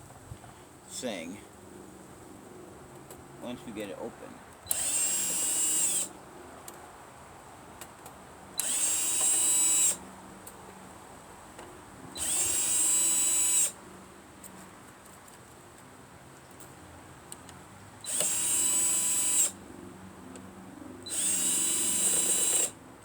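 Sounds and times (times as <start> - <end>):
power drill motor whine: 4.7 - 6.1, 8.6 - 10.0, 12.2 - 13.8, 18.0 - 19.6, 21.1 - 22.8.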